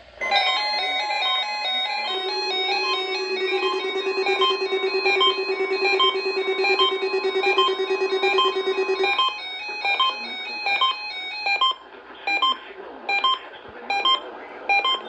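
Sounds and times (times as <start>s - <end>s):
electronic beeping tune: 0.5s - 15.0s
fast pulsing low tone: 2.1s - 9.2s.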